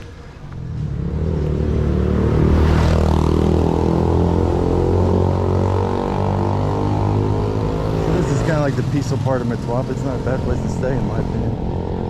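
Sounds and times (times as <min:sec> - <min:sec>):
vehicle engine running: 0:06.8 - 0:11.5.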